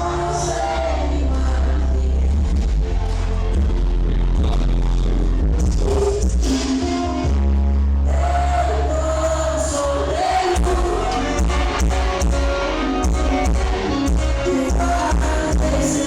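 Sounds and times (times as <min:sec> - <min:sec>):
live band music over loudspeakers: 0:00.0 - 0:16.0
person singing: 0:08.1 - 0:16.0.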